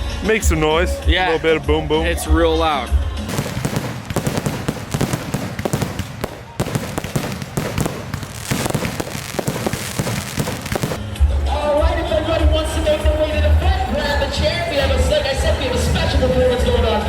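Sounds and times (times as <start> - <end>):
fireworks loud bangs: 3.2 - 11.2.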